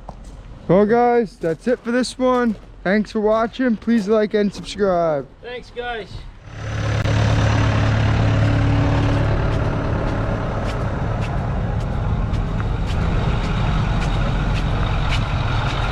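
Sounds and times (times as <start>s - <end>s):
heavy vehicle engine running: 6.4s - 15.9s.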